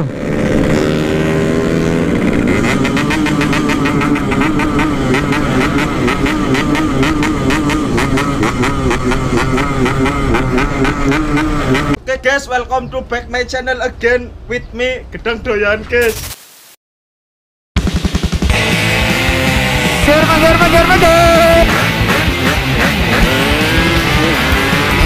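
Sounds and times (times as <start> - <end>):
motorcycle engine running: 0.0 - 12.0, 17.8 - 25.0.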